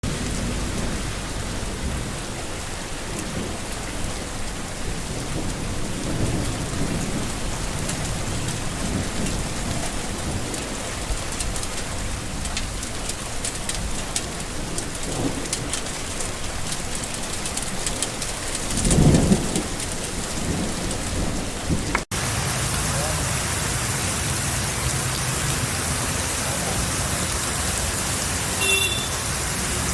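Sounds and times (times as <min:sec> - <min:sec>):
tropical rain falling: 0:00.0 - 0:29.9
rumbles of thunder: 0:03.3 - 0:11.6, 0:18.6 - 0:28.2.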